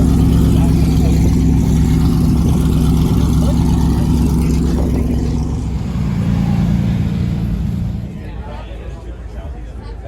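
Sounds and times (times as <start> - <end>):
truck engine running: 0.0 - 9.4.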